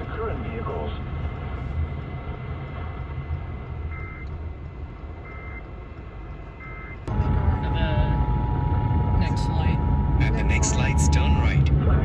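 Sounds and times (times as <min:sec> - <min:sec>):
car cabin road rumble: 0:00.0 - 0:12.0
short electronic beeps: 0:05.2 - 0:05.6.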